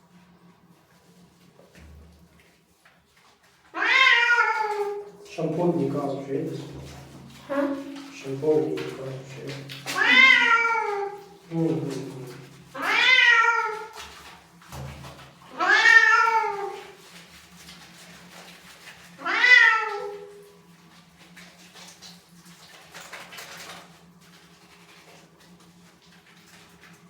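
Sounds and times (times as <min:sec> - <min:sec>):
cat meowing loudly: 0:03.7 - 0:05.1, 0:09.9 - 0:11.2, 0:12.8 - 0:14.0, 0:15.5 - 0:16.9, 0:19.2 - 0:20.3.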